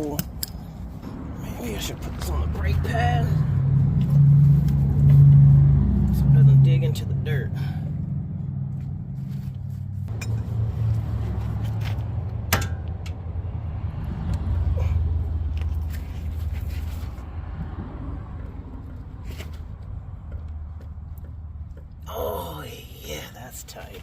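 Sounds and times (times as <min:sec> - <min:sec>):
metal tools clinking on wheel hub: 0:00.0 - 0:01.0, 0:10.1 - 0:11.0
engine rumble: 0:00.0 - 0:24.0
sharp ringing metal clank: 0:12.5 - 0:12.9.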